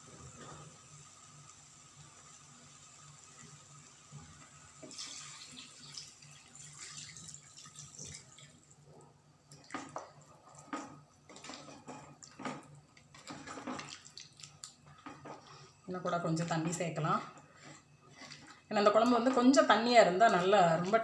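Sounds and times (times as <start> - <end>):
water poured into a pot: 4.7 - 8.8.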